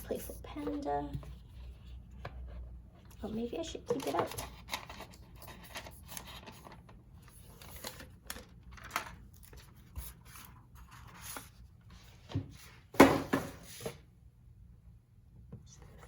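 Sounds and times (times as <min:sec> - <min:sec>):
paper rustling and crinkling: 0:03.8 - 0:12.7.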